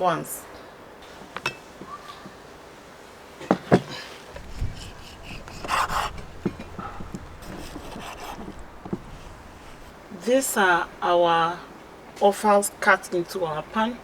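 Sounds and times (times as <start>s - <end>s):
knife rubbing and scraping: 4.4s - 10.0s.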